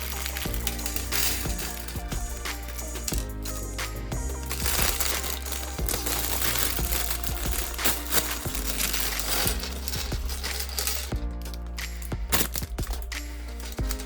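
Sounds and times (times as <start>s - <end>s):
background music with bass: 0.0s - 14.0s
plastic pieces clattering: 0.0s - 14.0s.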